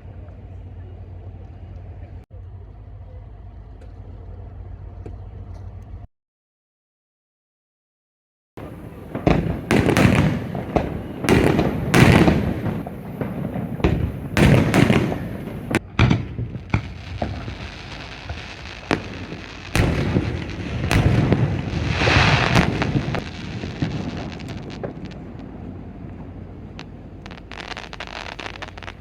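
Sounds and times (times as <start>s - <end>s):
fireworks booms and bangs: 8.6s - 29.0s
fireworks crackling: 8.6s - 29.0s.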